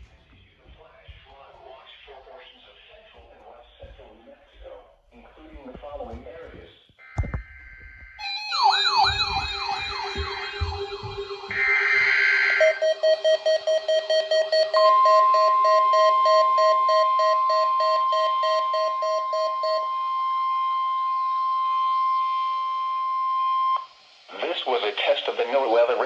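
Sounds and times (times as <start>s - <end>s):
steady alarm tone: 7.0s - 24.4s
fast pulsing low beep: 8.2s - 23.9s.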